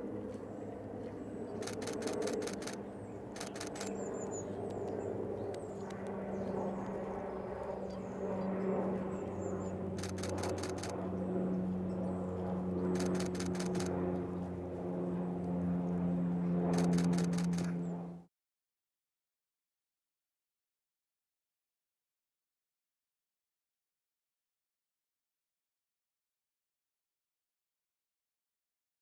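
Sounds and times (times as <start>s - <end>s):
camera shutter bursts: 1.6s - 4.9s, 5.5s - 6.1s, 10.0s - 11.0s, 13.0s - 13.9s, 16.8s - 17.8s
low engine drone: 16.6s - 18.2s.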